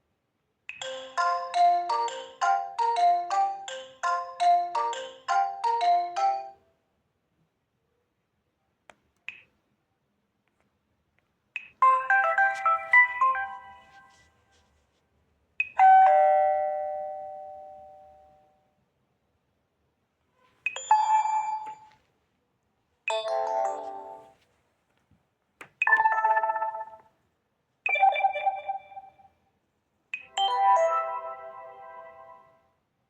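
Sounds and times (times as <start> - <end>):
phone chimes and jingles: 20.7 - 22.0, 25.9 - 27.1, 27.9 - 29.3.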